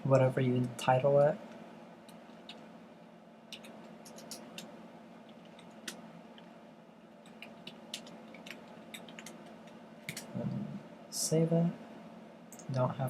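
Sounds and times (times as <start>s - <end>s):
keyboard and mouse clicks: 2.1s - 2.6s, 3.5s - 4.7s, 5.3s - 6.5s, 7.2s - 10.3s.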